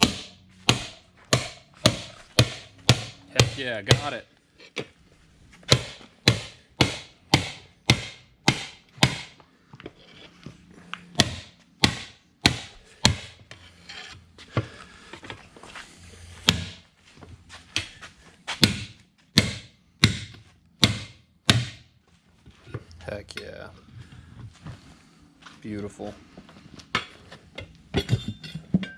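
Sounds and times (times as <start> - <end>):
hammer striking wheel: 0.0 - 4.2, 5.7 - 9.4, 11.1 - 13.6, 16.4 - 16.8, 18.6 - 21.9.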